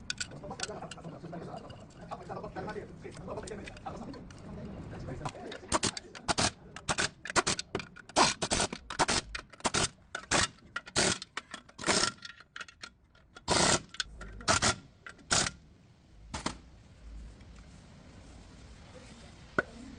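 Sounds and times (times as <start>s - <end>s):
metal tools knocking and scraping: 0.0s - 2.5s, 5.2s - 15.4s.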